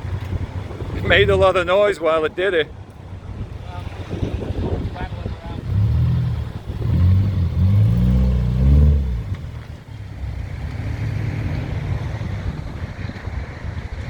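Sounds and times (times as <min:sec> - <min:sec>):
car engine revving and running: 0:05.0 - 0:13.3.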